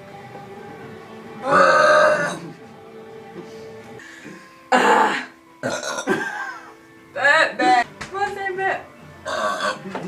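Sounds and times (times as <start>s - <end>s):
faint background music: 0.0s - 10.0s
woman burping loudly: 1.4s - 2.6s, 4.7s - 7.8s, 9.2s - 10.0s.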